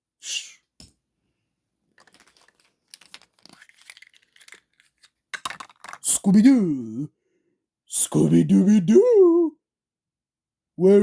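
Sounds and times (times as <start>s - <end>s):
wrapper crinkling and crackling: 2.0s - 6.0s.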